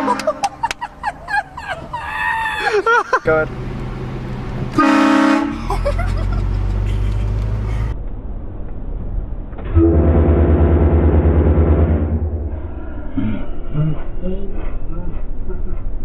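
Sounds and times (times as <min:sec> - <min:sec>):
vehicle air horn blast: 0:00.0 - 0:00.5, 0:04.8 - 0:05.6, 0:09.7 - 0:12.5
vehicle running hum: 0:00.0 - 0:16.0
low pulsing tone: 0:08.0 - 0:16.0.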